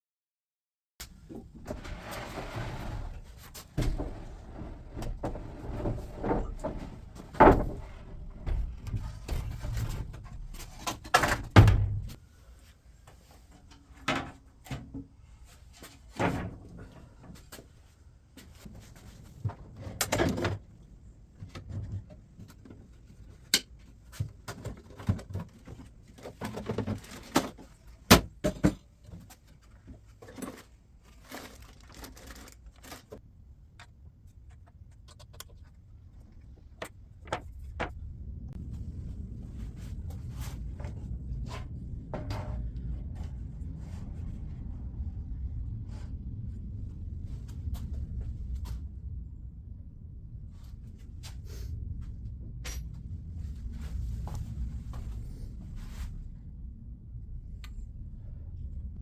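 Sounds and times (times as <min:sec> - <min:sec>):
low steady rumble: 0:01.2 - 0:13.5, 0:30.8 - 0:59.0.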